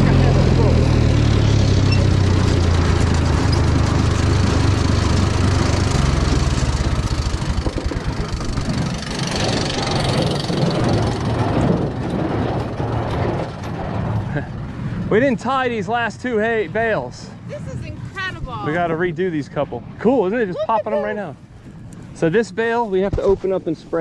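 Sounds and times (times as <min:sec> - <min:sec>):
tractor engine running: 0:00.0 - 0:15.1.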